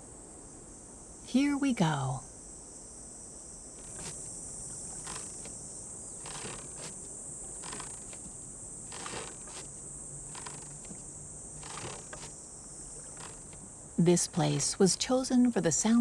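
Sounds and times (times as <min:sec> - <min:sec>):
insects buzzing: 0:00.0 - 0:16.0
oar rowing strokes: 0:03.8 - 0:13.8.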